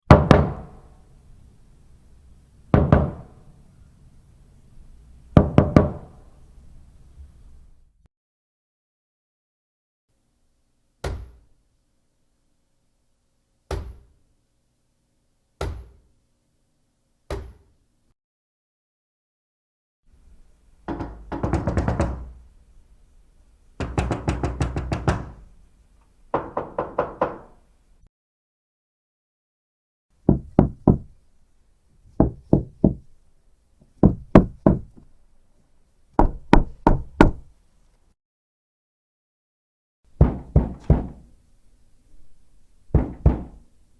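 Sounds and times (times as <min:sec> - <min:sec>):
heavy knocks on a door: 0:00.1 - 0:00.8, 0:02.7 - 0:03.4, 0:05.4 - 0:06.2, 0:20.8 - 0:22.4, 0:23.8 - 0:25.5, 0:26.3 - 0:27.6, 0:30.3 - 0:31.2, 0:32.1 - 0:33.1, 0:33.9 - 0:35.1, 0:36.2 - 0:37.5, 0:40.2 - 0:41.4, 0:42.9 - 0:43.7.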